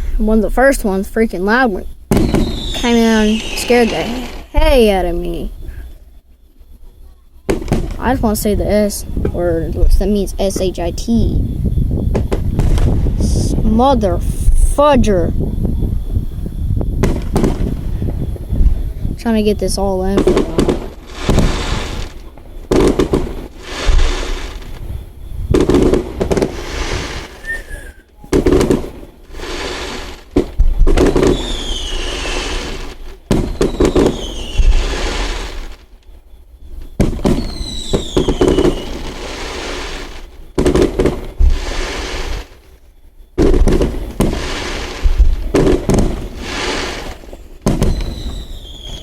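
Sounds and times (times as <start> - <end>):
fireworks banging and crackling: 0.0 - 49.0
firework whistles sliding down: 2.1 - 4.9, 20.6 - 49.0.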